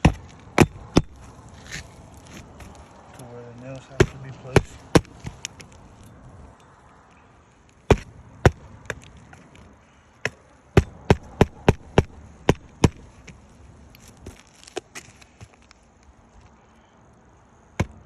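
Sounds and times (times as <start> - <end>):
hammer striking roofing nails: 0.0 - 1.2, 3.9 - 5.4, 7.9 - 9.0, 10.2 - 13.1.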